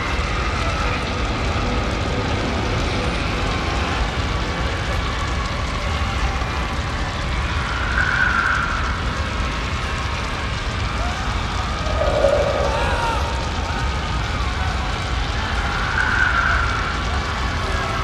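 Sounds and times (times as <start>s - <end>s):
low rumble: 10.9s - 15.5s
faint wavering tones: 11.3s - 14.8s
high wailing tone: 11.4s - 14.7s.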